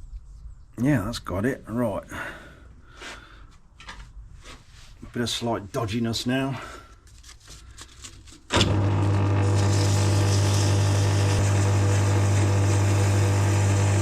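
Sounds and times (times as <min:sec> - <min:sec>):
lathe motor humming: 0:08.6 - 0:14.0.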